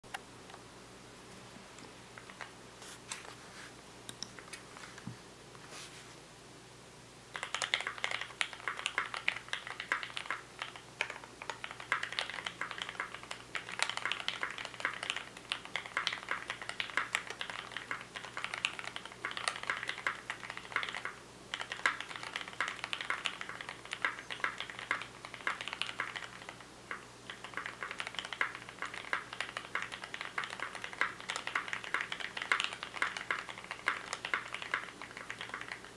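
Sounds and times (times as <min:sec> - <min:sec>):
typing on mechanical keyboard: 0:07.3 - 0:35.9.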